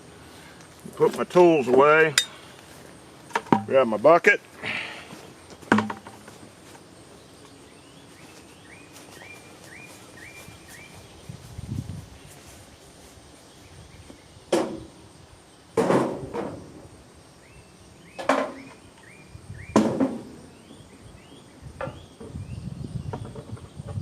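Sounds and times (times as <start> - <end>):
hard objects set down: 5.5 - 6.4
bird chirps: 7.2 - 11.4
scuffling footsteps: 8.1 - 14.1.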